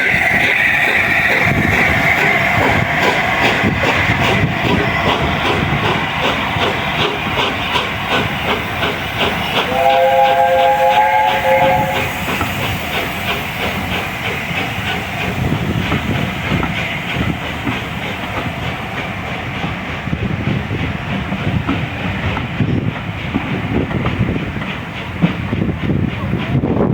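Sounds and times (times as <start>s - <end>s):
train clattering past: 0.0s - 26.9s
train horn chord: 9.6s - 12.2s.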